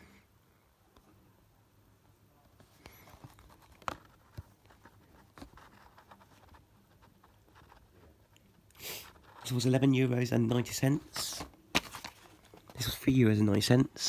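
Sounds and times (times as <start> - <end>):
packaging rustling: 10.6 - 13.2.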